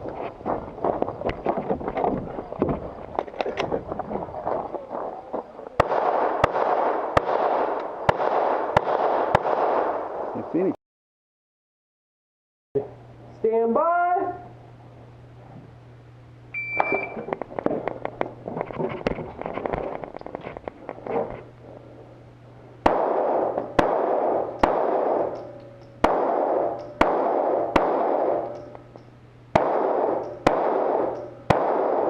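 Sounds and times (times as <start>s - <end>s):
handling noise: 0.0s - 5.8s
pistol shots echoing: 5.8s - 10.2s, 22.8s - 28.7s, 29.5s - 32.0s
shot timer beep: 16.5s - 17.2s.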